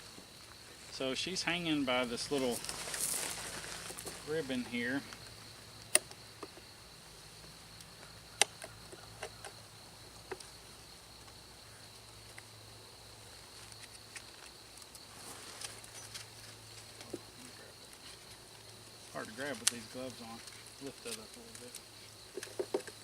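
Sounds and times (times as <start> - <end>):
high-pitched insect chirring: 0.0 - 15.1
sharp clicks: 5.8 - 6.5, 7.8 - 9.6, 19.5 - 19.8.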